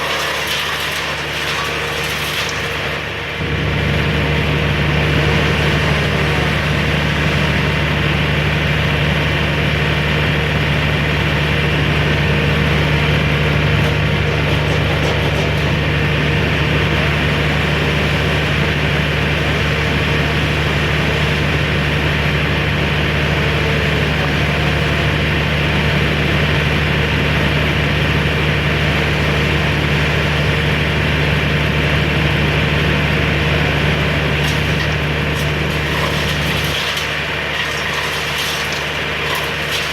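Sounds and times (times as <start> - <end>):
heavy engine running: 0.0 - 39.9.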